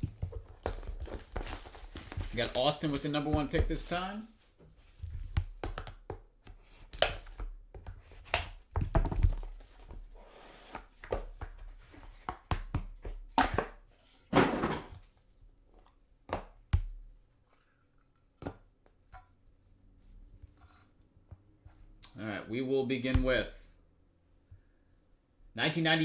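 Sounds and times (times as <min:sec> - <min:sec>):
packaging rustling: 0:00.0 - 0:05.0.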